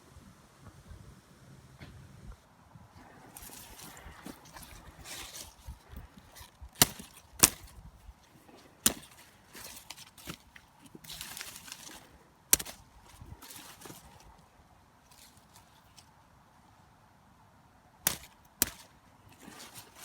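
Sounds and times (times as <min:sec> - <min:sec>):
leaves rustling: 0:02.9 - 0:17.0, 0:18.0 - 0:20.0
stalks snapping: 0:03.0 - 0:14.4, 0:15.1 - 0:16.1, 0:18.0 - 0:20.0.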